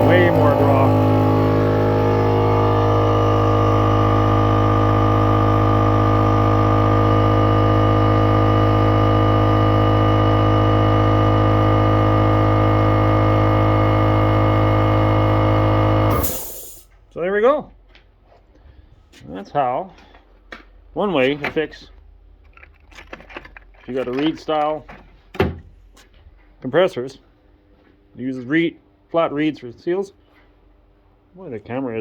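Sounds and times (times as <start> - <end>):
air compressor humming: 0.0 - 17.0.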